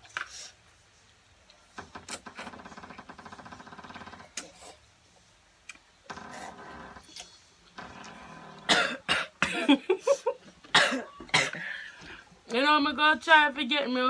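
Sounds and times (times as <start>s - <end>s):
person coughing harshly: 8.7s - 11.8s.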